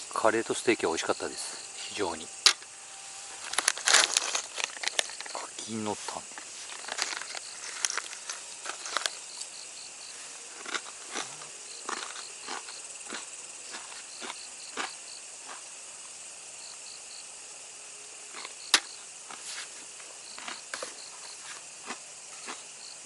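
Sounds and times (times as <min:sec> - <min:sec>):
night insects chirping: 0:00.0 - 0:23.0
sharp clicks and crackles: 0:03.5 - 0:05.4, 0:06.3 - 0:09.5.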